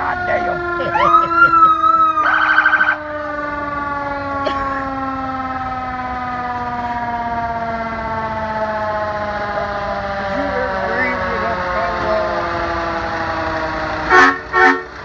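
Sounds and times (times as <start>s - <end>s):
siren winding down: 0.0s - 15.0s
loud pulsing tone: 2.2s - 3.0s.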